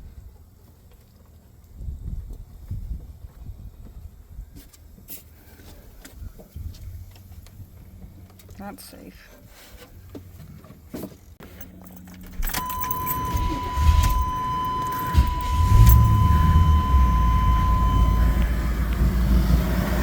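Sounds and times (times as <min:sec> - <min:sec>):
engine cranking and idling: 0:12.0 - 0:20.0
dashboard warning tone: 0:12.4 - 0:19.5.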